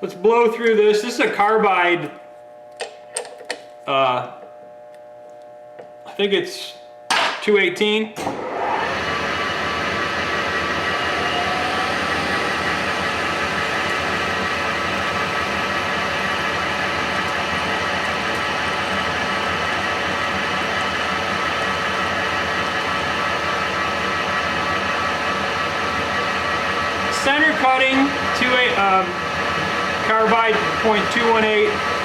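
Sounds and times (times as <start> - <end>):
lathe running: 8.2 - 32.0.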